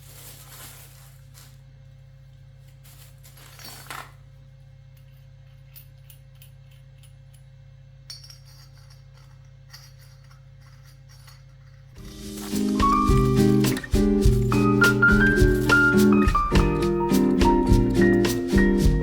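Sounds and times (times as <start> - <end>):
faint small clicks and clinks: 4.9 - 12.0.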